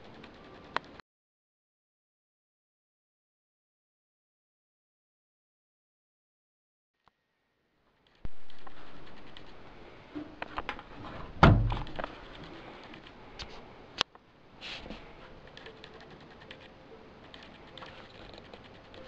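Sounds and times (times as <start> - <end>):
loud heavy thump: 11.4 - 12.0.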